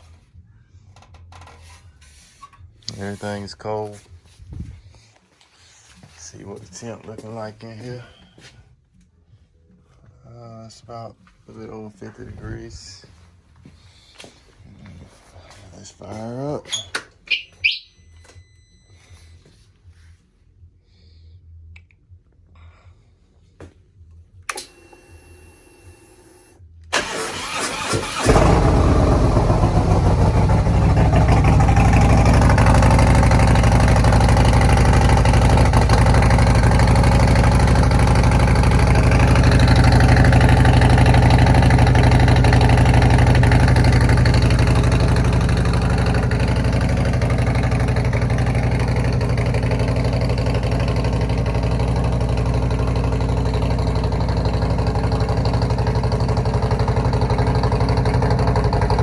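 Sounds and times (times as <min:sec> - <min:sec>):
motorcycle engine idling: 0:28.1 - 0:59.0.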